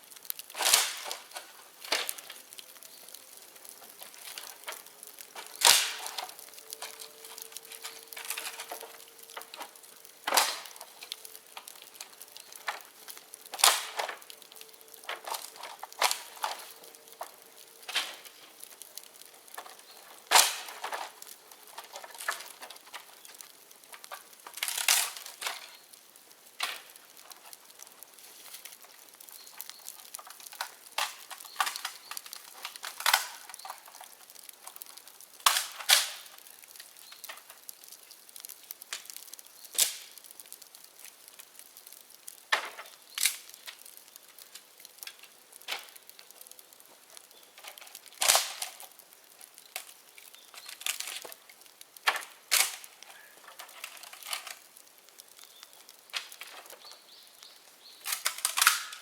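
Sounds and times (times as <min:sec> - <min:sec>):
bamboo fire crackling: 0:00.0 - 0:59.0
loud sharp pops: 0:00.3 - 0:02.4, 0:03.7 - 0:11.1, 0:13.5 - 0:14.3, 0:19.5 - 0:25.9, 0:28.1 - 0:37.4.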